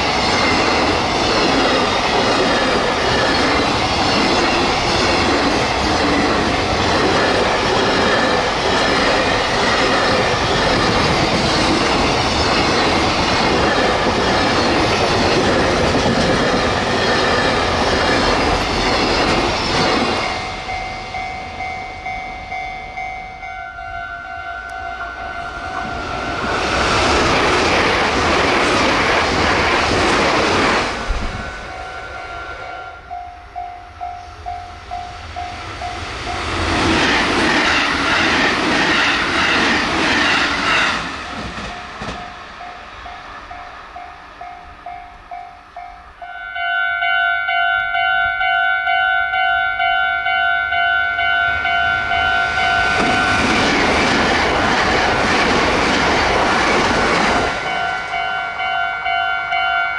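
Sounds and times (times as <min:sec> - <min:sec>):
train rushing past: 0:00.0 - 0:46.3, 0:49.8 - 0:59.9
higher-pitched crossing bell: 0:18.8 - 0:26.1, 0:31.6 - 0:36.5, 0:41.7 - 0:53.4, 0:57.6 - 0:59.9
level crossing bell ringing: 0:20.2 - 0:25.9, 0:44.4 - 0:53.4, 0:57.6 - 0:59.9.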